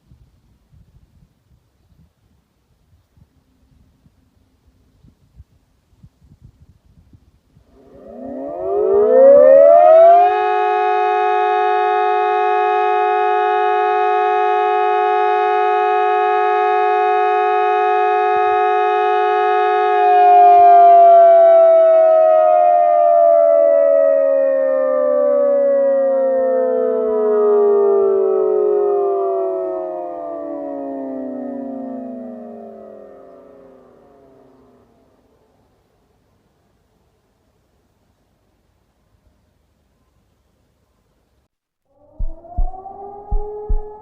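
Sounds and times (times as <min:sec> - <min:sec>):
electronic siren chord: 0:07.7 - 0:35.4, 0:41.9 - 0:44.0.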